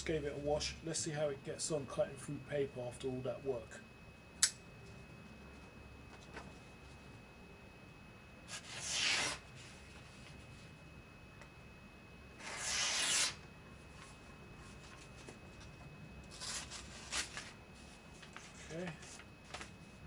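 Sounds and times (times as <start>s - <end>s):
knife slicing paper: 8.5s - 9.4s, 12.4s - 13.4s.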